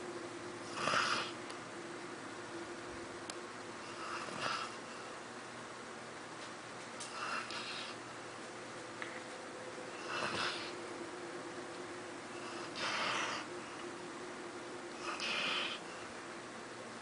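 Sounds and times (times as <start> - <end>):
dog snoring: 0.6 - 1.4, 3.8 - 5.1, 7.0 - 8.0, 9.9 - 10.9, 12.3 - 13.8, 14.9 - 16.1.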